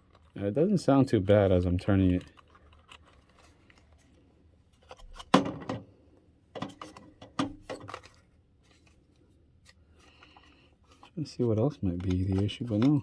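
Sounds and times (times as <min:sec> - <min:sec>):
plastic parts knocking and clicking: 0:04.9 - 0:05.9, 0:06.5 - 0:08.1, 0:11.9 - 0:13.0.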